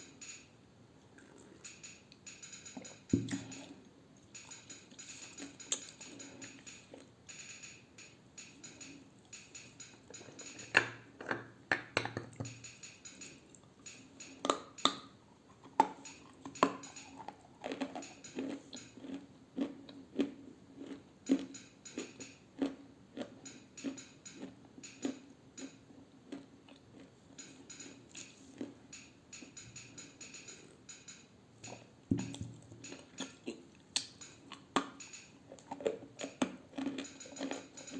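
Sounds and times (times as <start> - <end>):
clay crunching being chewed: 15.5 - 27.4, 31.6 - 37.9.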